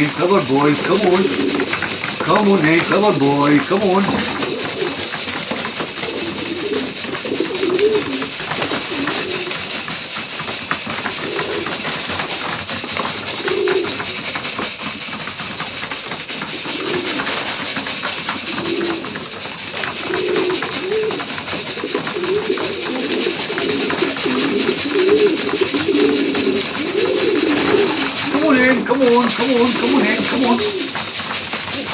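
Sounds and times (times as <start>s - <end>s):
pigeons cooing: 0.0s - 31.9s.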